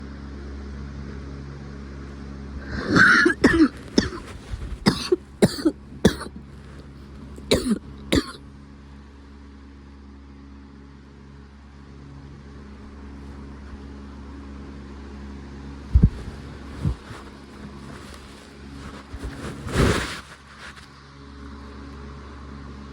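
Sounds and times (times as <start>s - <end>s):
steady low hum: 0.0s - 22.9s
harsh coughing: 2.6s - 6.8s, 7.4s - 8.4s.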